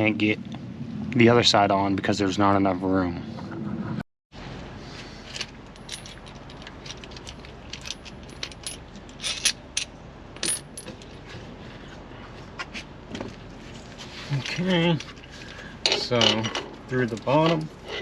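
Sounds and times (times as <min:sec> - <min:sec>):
small metal parts clinking: 0:05.2 - 0:11.2.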